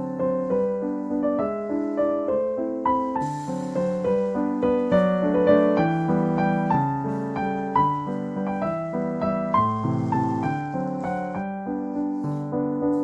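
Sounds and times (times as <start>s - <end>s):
piano music: 0.0s - 13.0s.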